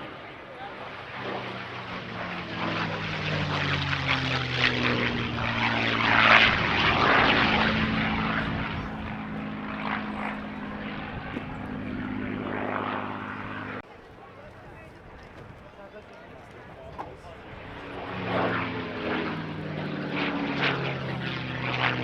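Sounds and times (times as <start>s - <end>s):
propeller aircraft engine passing: 0.0s - 22.0s.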